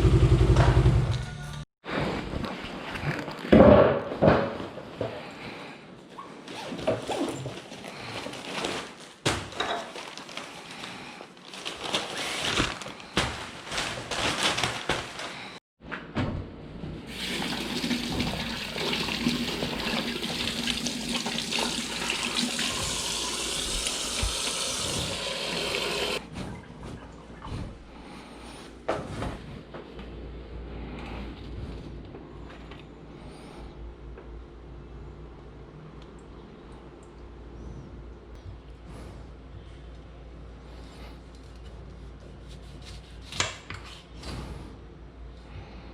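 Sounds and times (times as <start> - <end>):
water running from a tap: 17.1 - 26.2.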